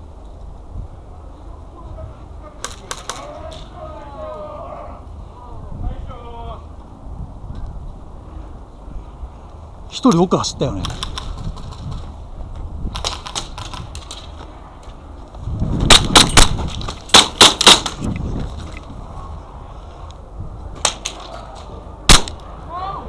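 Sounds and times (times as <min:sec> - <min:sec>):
airsoft pistol shots: 0:15.9 - 0:18.1, 0:20.8 - 0:21.3, 0:22.1 - 0:22.5.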